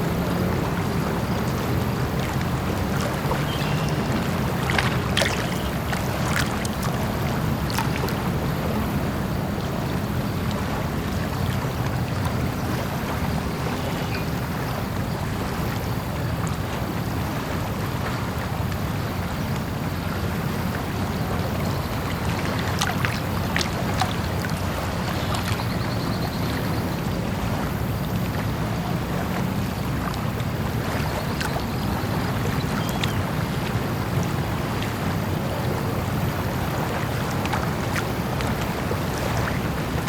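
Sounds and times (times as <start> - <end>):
water washing: 0.0 - 13.9, 20.9 - 25.9, 30.2 - 40.0.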